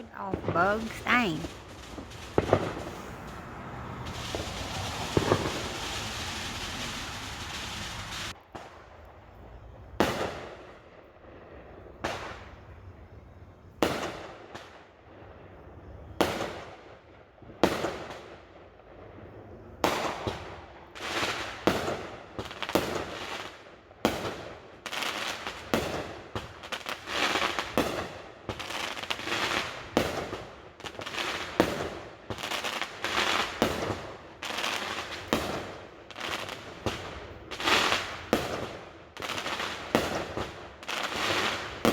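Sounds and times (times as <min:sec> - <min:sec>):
firework bangs: 0:00.3 - 0:08.7, 0:25.6 - 0:41.9
firework hiss: 0:01.6 - 0:08.4.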